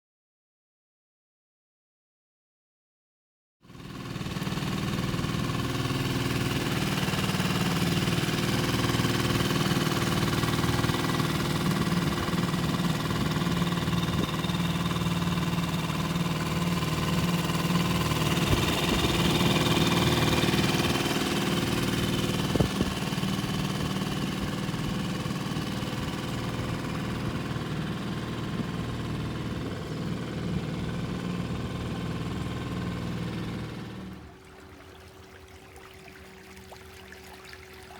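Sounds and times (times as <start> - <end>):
outboard motor running: 3.7 - 37.9.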